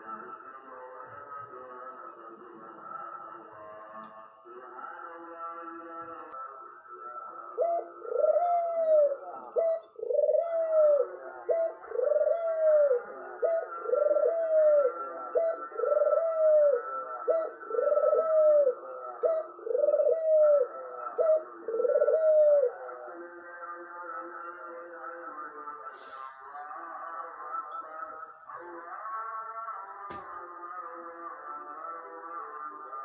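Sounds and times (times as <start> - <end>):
dove cooing: 7.6 - 23.2.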